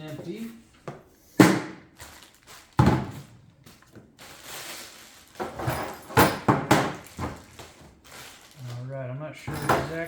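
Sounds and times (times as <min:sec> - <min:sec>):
packaging rustling: 0:02.0 - 0:02.8, 0:03.6 - 0:05.8, 0:07.0 - 0:09.0.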